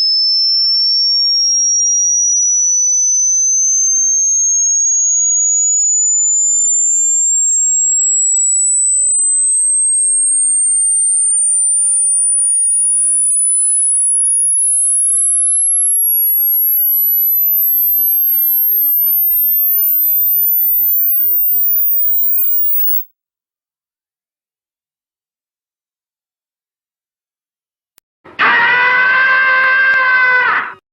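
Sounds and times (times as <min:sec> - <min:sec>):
high-pitched rising sine tone: 0:00.0 - 0:23.1.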